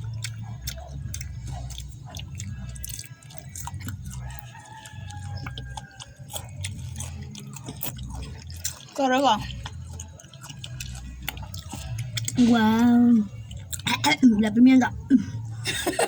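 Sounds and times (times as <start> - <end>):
chewing and biting fruit: 0.0 - 15.7.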